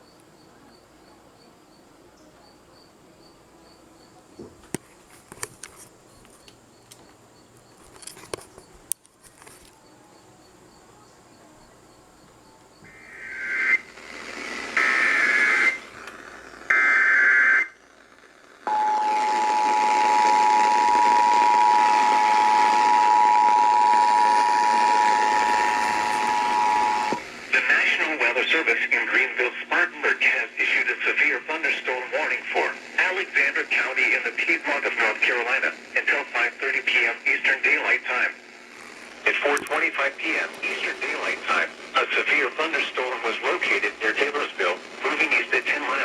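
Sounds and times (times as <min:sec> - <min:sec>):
faint crickets: 0:00.0 - 0:17.0, 0:24.7 - 0:46.0
radio hiss: 0:10.9 - 0:46.0
screechy data tone bursts: 0:11.9 - 0:28.6
two-tone attention signal: 0:18.7 - 0:27.2.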